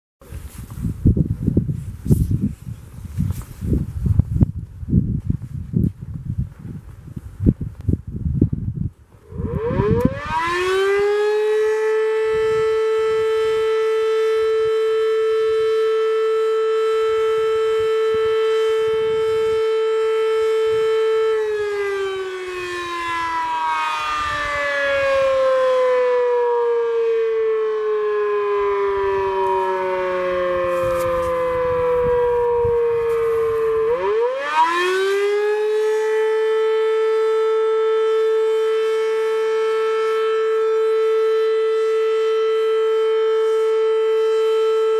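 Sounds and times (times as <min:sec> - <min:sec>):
fire siren wailing: 0:09.2 - 0:44.9.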